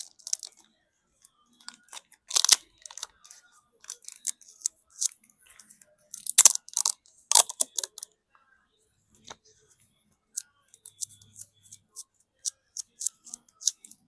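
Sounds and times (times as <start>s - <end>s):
crackling of smartphone parts: 0.0s - 0.6s, 1.6s - 5.2s, 6.1s - 8.1s, 10.3s - 14.0s.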